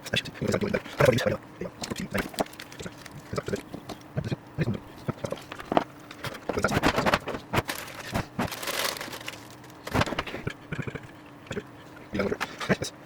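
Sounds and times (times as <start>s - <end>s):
rustling and scraping: 4.9s - 10.3s.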